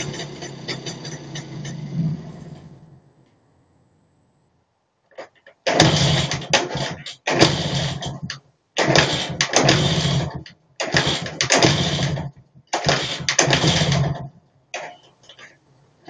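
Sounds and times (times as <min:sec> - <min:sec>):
motorcycle engine kick-started: 0:05.7 - 0:15.5.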